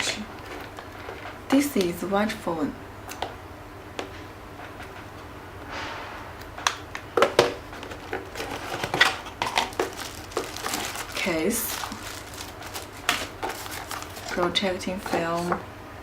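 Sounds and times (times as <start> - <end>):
sliding rustle: 7.2 - 15.6.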